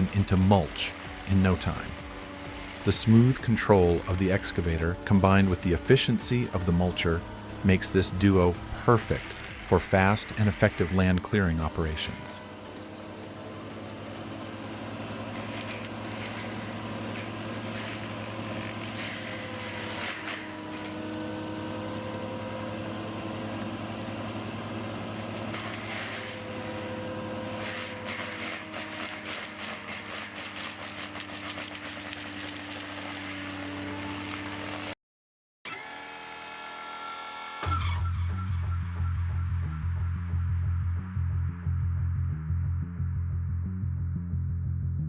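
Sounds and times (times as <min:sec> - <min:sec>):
excavator engine and hydraulic hum: 0:00.0 - 0:35.0, 0:35.7 - 0:38.4
mulcher grinding brush: 0:00.0 - 0:35.0.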